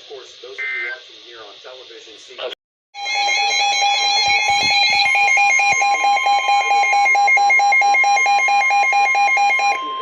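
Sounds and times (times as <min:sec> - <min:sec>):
rapid electronic beeping: 0:03.0 - 0:10.0
steady high tone: 0:03.0 - 0:10.0.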